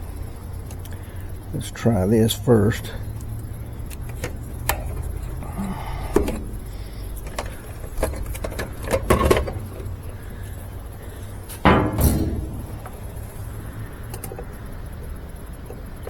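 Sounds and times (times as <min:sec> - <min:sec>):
steady low hum: 0:00.0 - 0:16.0
clicks and metallic rattles: 0:06.1 - 0:10.2, 0:11.5 - 0:13.2.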